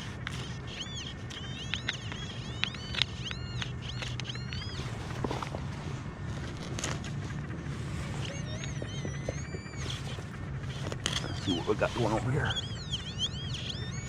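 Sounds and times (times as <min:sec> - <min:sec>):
sharp clicks: 0:00.0 - 0:05.6
small birds chirping: 0:00.0 - 0:14.0
steady low hum: 0:00.0 - 0:14.0.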